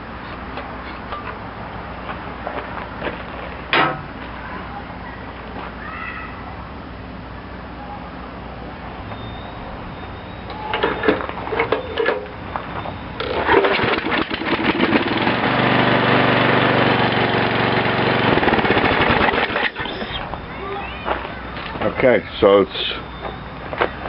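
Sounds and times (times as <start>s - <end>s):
recoil starter clatter: 13.2s - 15.8s, 16.9s - 20.0s
mower engine running: 13.2s - 20.6s.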